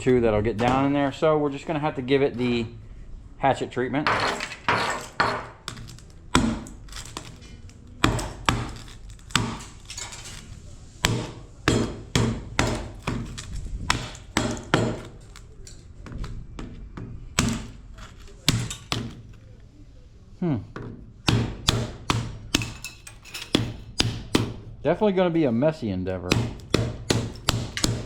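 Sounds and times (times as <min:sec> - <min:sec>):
hatchet striking lamp housing: 0:26.3 - 0:28.0.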